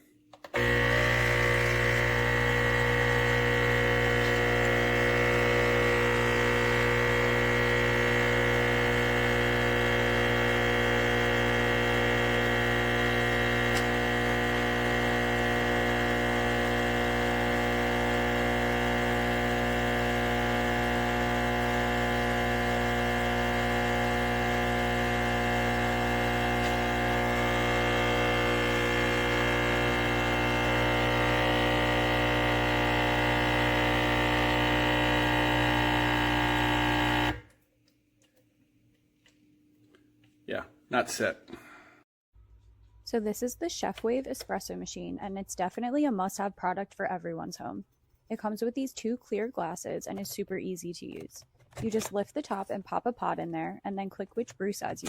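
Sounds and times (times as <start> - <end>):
espresso machine pump humming: 0.4 - 37.5.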